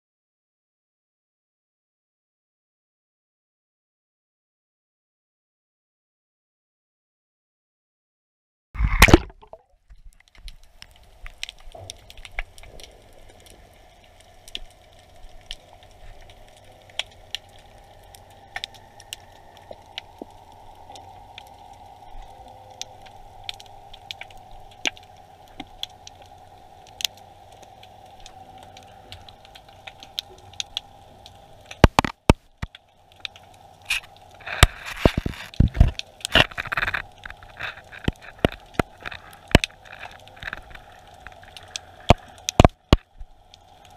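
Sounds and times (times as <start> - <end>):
faint underwater hum: 8.8 - 43.9
sharp clicks and crackling: 8.8 - 43.9.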